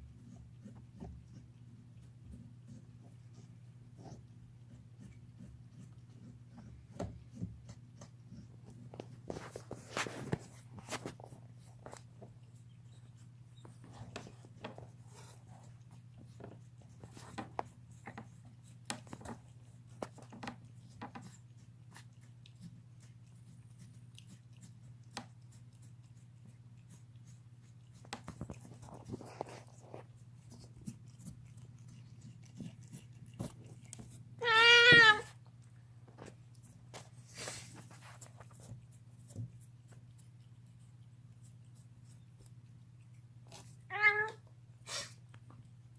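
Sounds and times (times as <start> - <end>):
cat gnawing on a bone: 0.0 - 45.9
cat yowling: 34.4 - 35.3, 43.9 - 44.4.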